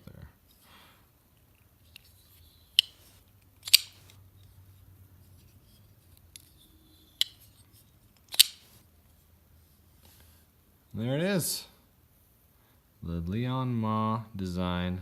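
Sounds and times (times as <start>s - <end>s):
folding knife blade snapping: 3.6s - 4.2s, 8.3s - 8.7s.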